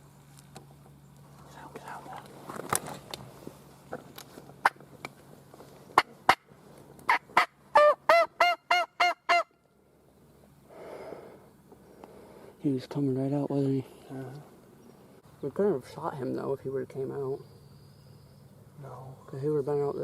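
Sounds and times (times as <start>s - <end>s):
turkey hen yelps: 7.1s - 9.6s.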